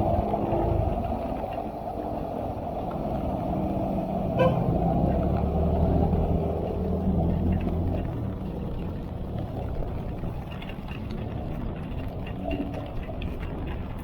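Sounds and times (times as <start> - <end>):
vehicle engine running: 0.0 - 14.0
short horn beep: 4.4 - 4.6.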